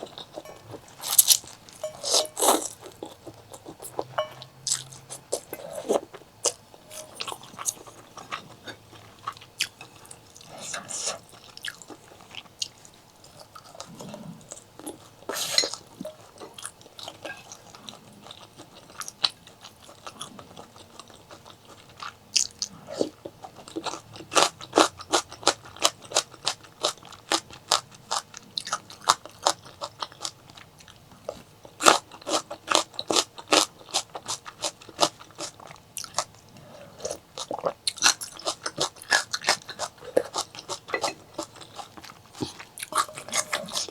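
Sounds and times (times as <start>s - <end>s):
person biting and chewing food: 0.2s - 4.1s, 37.5s - 43.9s.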